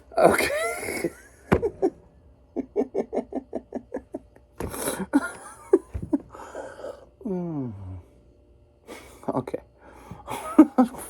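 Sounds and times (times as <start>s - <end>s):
man laughing: 0.2s - 7.6s, 10.3s - 11.0s.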